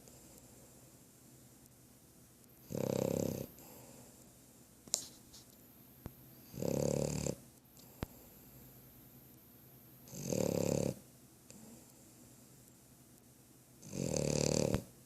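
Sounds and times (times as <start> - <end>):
person snoring: 2.6 - 3.8, 6.5 - 7.4, 10.1 - 11.0, 13.8 - 14.9.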